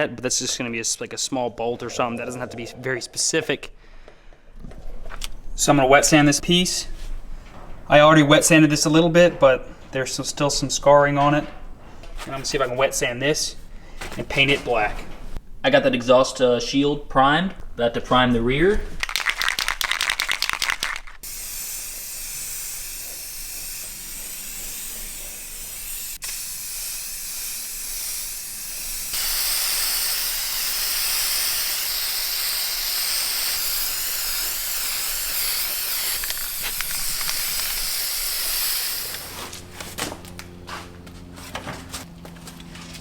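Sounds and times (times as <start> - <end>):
spray can rattle: 19.0 - 39.4
aerosol spray hiss: 21.2 - 39.5.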